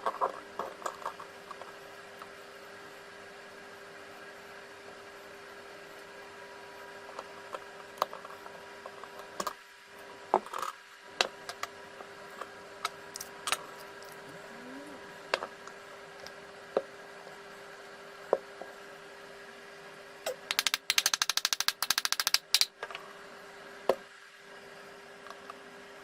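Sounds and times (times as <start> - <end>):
faint hum: 11.0 - 20.6.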